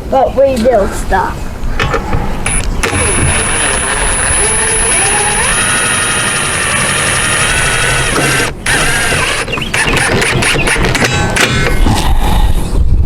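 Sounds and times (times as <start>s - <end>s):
power drill driving screw into metal: 2.5s - 11.4s.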